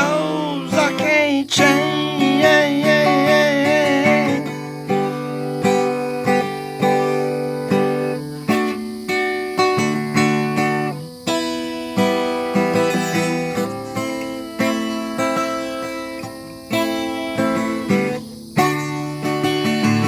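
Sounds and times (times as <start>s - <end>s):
person singing with vibrato: 0.0s - 5.3s
acoustic guitar strumming: 0.0s - 20.0s.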